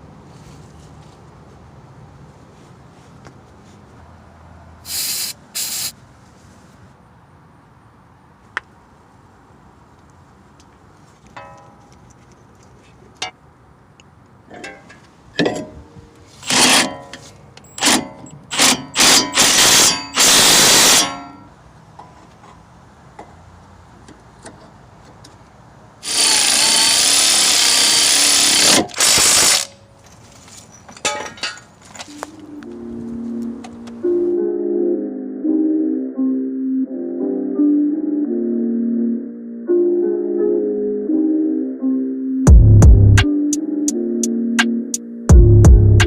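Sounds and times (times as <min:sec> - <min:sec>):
handheld power tool running: 0:17.8 - 0:21.2, 0:26.0 - 0:29.7.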